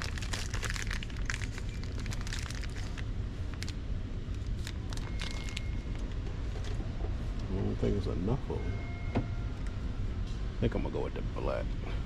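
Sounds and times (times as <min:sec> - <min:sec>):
packaging crackling and clicking: 0:00.0 - 0:03.8, 0:04.4 - 0:06.8
steady low rumble: 0:00.0 - 0:12.0
short beep: 0:08.6 - 0:09.6.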